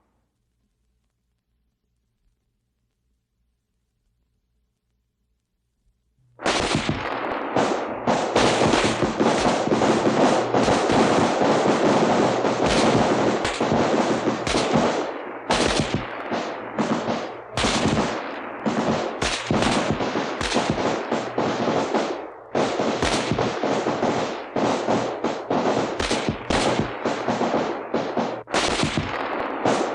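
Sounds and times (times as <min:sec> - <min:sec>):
rifles firing: 0:06.4 - 0:29.9.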